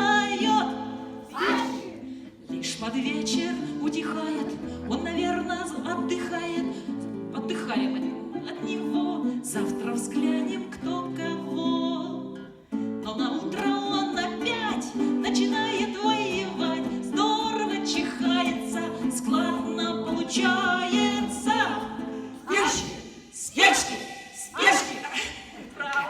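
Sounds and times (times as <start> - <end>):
voices singing with acoustic guitar: 0.0 - 26.0.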